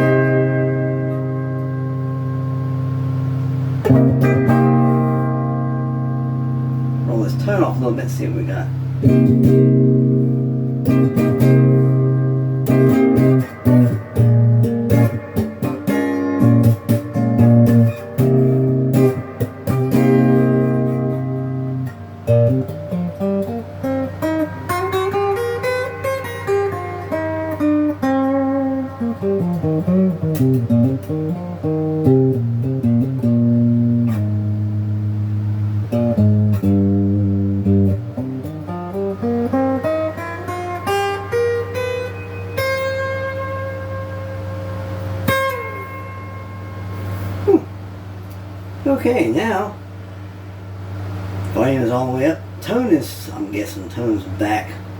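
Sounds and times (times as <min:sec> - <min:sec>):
clean electric guitar: 0:00.0 - 0:49.0.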